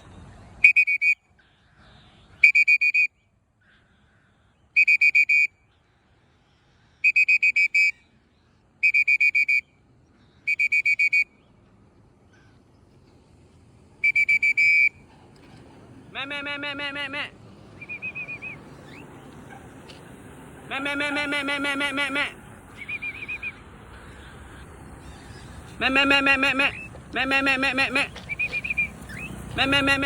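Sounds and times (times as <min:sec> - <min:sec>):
whistle trilling blasts: 0:00.6 - 0:01.2, 0:02.4 - 0:03.1, 0:04.8 - 0:05.6, 0:07.0 - 0:08.1, 0:08.8 - 0:09.8, 0:10.5 - 0:11.4, 0:14.0 - 0:15.1, 0:17.8 - 0:19.1, 0:22.7 - 0:23.7, 0:28.3 - 0:30.0.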